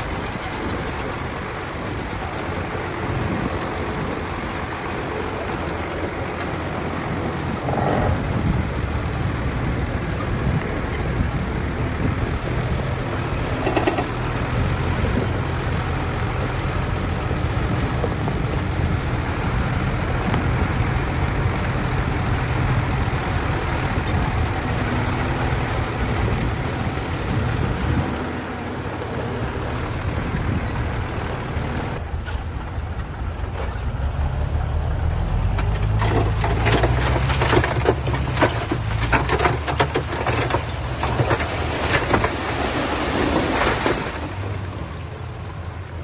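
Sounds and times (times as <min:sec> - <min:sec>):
diesel machine engine drone: 0:00.0 - 0:46.0
rattling: 0:35.4 - 0:42.4.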